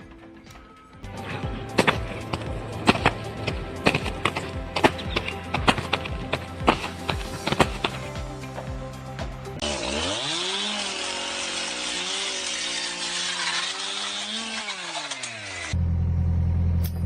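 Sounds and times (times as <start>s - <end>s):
background music: 0.0s - 14.3s
power tool motor spinning: 9.6s - 15.8s.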